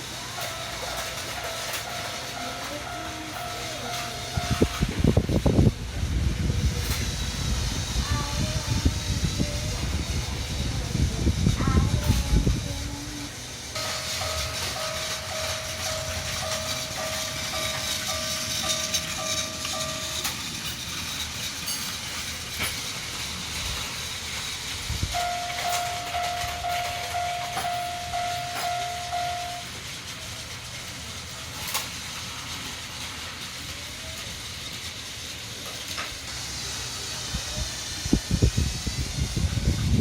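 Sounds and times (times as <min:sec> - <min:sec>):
toy train whirring: 0:00.0 - 0:40.0
electronic warning bell dinging: 0:13.8 - 0:20.4, 0:25.1 - 0:29.7.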